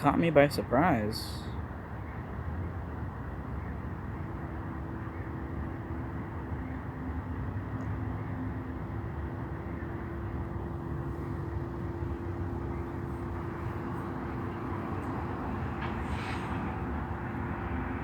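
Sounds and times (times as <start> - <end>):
faint steady hum: 6.2 - 18.0
freight train wheels rumbling on rails: 9.9 - 18.0.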